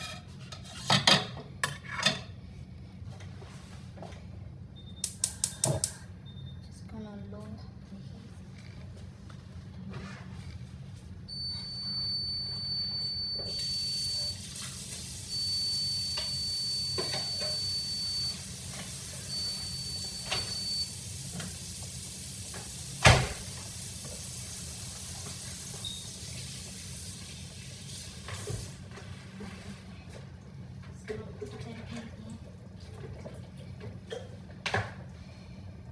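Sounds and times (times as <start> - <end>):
food sizzling in a hot pan: 13.6 - 28.8.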